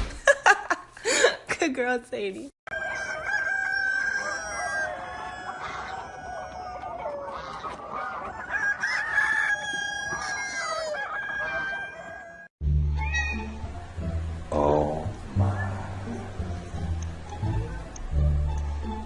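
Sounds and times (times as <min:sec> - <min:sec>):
low hum: 0:12.7 - 0:19.0.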